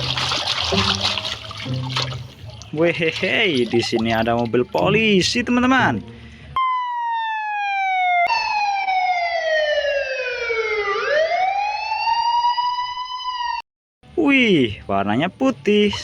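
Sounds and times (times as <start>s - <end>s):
police siren wailing: 6.6s - 13.6s.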